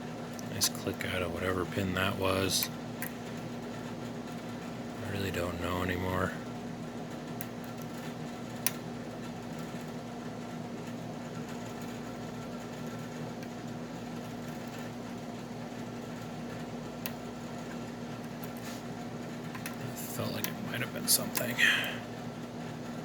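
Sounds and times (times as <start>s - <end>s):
steady mechanical hum: 0.0s - 23.0s.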